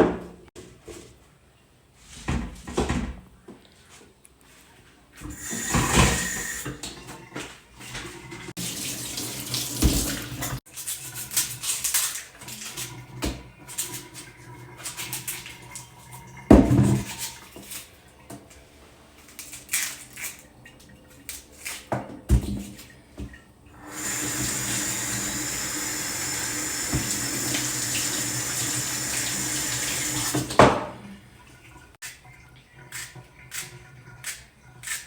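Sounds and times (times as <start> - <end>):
tap water splashing into sink: 8.6 - 10.6, 11.4 - 18.4, 20.7 - 35.0.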